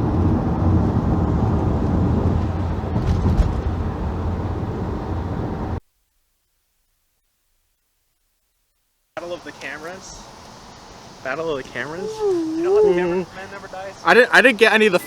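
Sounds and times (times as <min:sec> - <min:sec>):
car engine and road noise: 0:00.0 - 0:05.8, 0:09.2 - 0:12.0.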